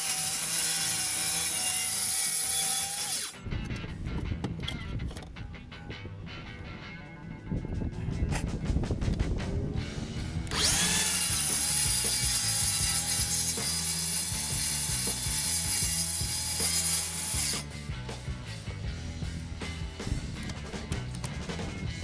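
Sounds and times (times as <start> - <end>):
power tool running: 0.0 - 3.4, 10.2 - 17.7.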